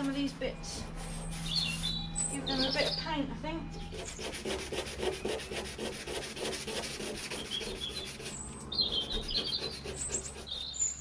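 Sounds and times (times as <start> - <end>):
birds chirping: 0.0 - 11.0
sandpaper rubbing on metal: 3.9 - 11.0.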